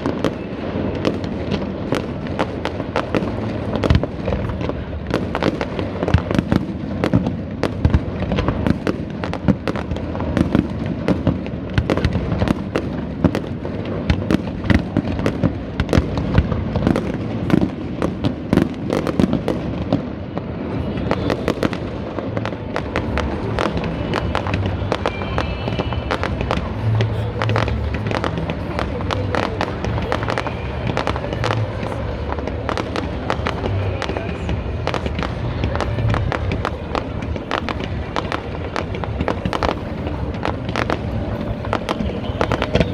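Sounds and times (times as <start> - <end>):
fireworks bangs and crackles: 0.0 - 42.9.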